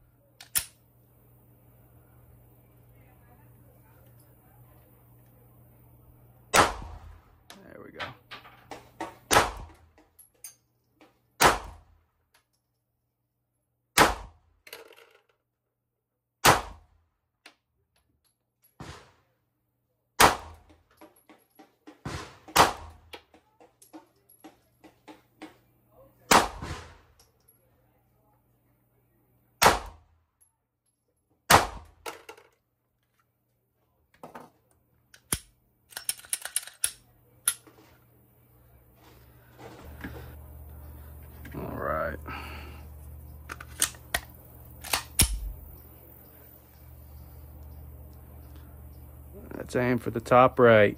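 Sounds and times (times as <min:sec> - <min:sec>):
pistol shots: 0:06.5 - 0:07.3, 0:09.3 - 0:09.8, 0:11.4 - 0:11.9, 0:14.0 - 0:14.4, 0:16.4 - 0:16.9, 0:20.2 - 0:20.7, 0:22.0 - 0:23.1, 0:26.3 - 0:27.1, 0:29.6 - 0:30.1, 0:31.5 - 0:32.0.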